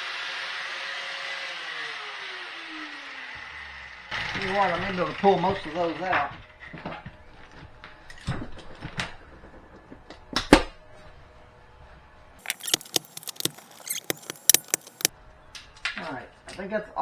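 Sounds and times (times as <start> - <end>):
staples scraping and clicking: 12.4 - 15.1.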